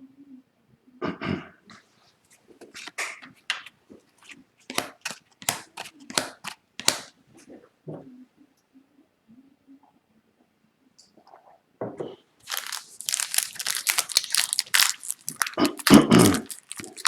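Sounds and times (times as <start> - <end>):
cards snapping and sliding: 2.6 - 7.1.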